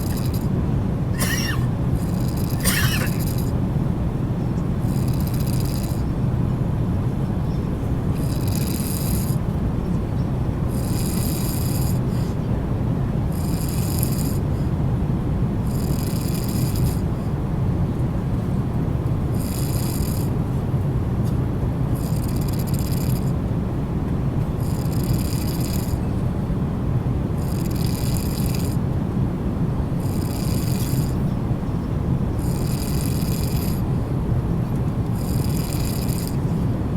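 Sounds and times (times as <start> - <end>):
man snoring: 0.0 - 0.5, 1.2 - 3.5, 4.9 - 6.0, 8.2 - 9.4, 10.8 - 12.0, 30.0 - 31.2, 32.4 - 33.8, 35.2 - 36.4
airliner cabin drone: 0.0 - 8.2.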